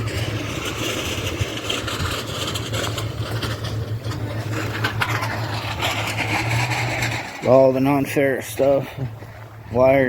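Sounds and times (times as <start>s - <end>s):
engine running with low hum: 0.0s - 10.0s.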